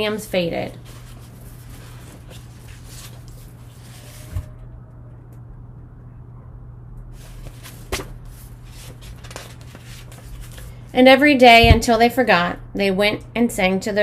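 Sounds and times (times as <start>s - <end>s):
steady low hum: 0.0s - 14.0s
soft low thump: 11.6s - 11.9s.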